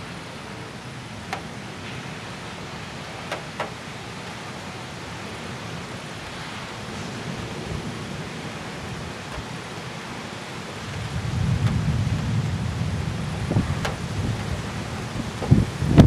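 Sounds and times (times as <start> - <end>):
steady rain: 0.0 - 16.0
low rumble of thunder: 6.3 - 16.0.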